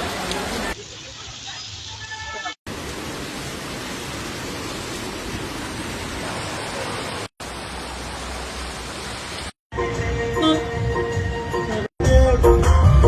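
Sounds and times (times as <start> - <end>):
heavy rain: 0.0 - 9.6.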